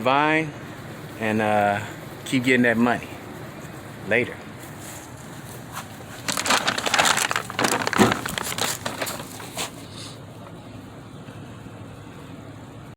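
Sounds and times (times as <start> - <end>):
crinkling rustling crackles: 4.5 - 10.0.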